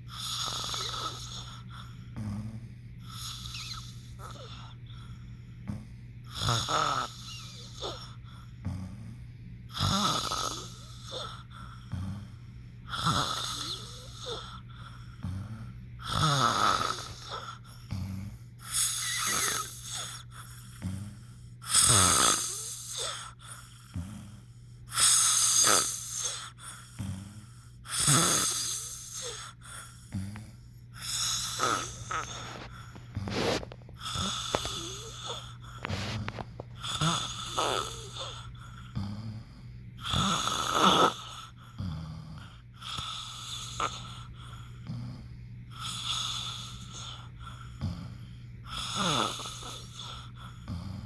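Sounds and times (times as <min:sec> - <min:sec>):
person snoring: 0:00.1 - 0:51.0.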